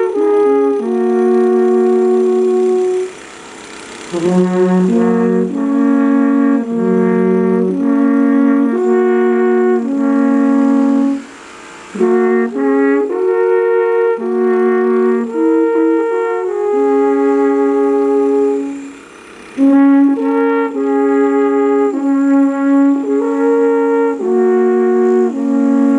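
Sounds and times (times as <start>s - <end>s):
alphorns playing: 0.0s - 25.9s.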